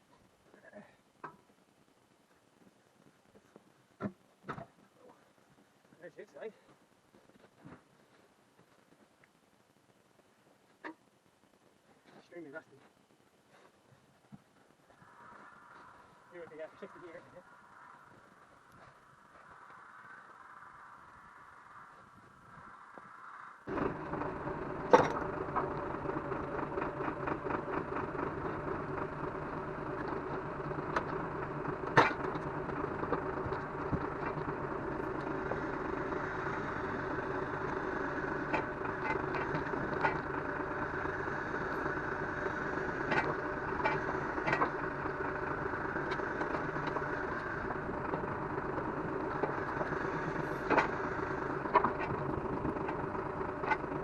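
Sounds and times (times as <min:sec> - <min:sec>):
engine running: 0:13.6 - 0:54.0.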